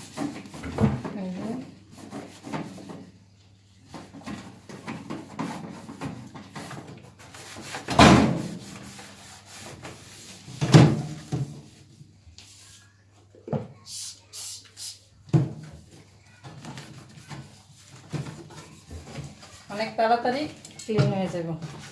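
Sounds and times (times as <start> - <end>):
small knocks and rubs: 15.8 - 19.7.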